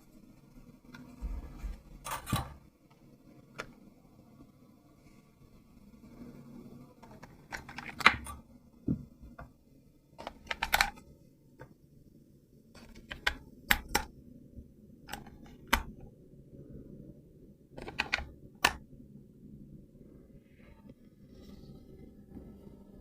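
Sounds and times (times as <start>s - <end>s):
faint low hum: 0.0s - 23.0s
plastic clicks and rattles: 7.2s - 8.4s, 10.2s - 11.0s, 12.8s - 14.1s, 15.1s - 16.0s, 17.8s - 18.8s.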